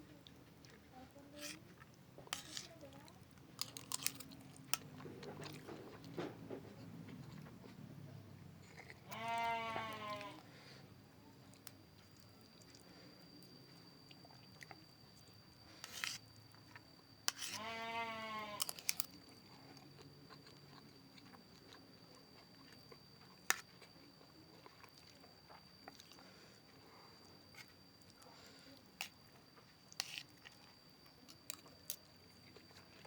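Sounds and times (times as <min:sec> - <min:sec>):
goat bleating: 0:09.0 - 0:10.4, 0:17.6 - 0:18.6.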